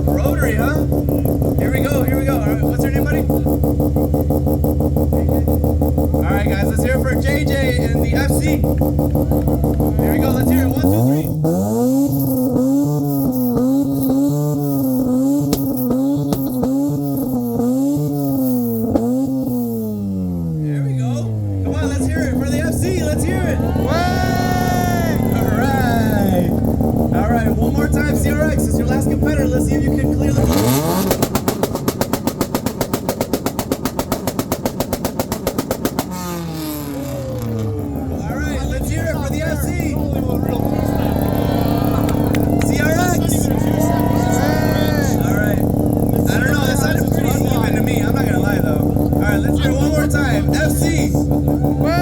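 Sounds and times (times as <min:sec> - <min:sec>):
rotary engine revs bouncing: 0:00.0 - 0:52.0
exhaust pops and cracks: 0:13.2 - 0:19.6, 0:26.2 - 0:37.9, 0:45.4 - 0:51.8.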